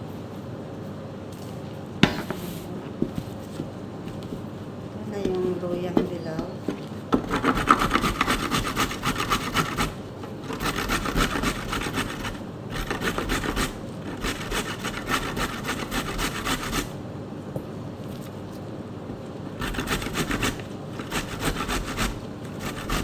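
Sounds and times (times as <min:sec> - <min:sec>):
root rasping on a grater: 0:07.2 - 0:17.0, 0:19.5 - 0:23.0.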